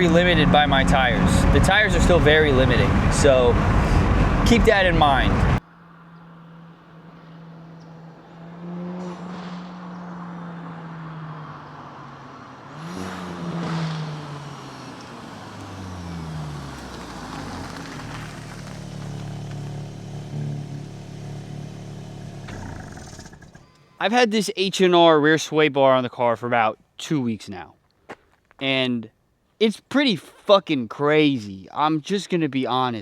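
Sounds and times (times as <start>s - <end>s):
car engine accelerating: 0.0s - 23.6s.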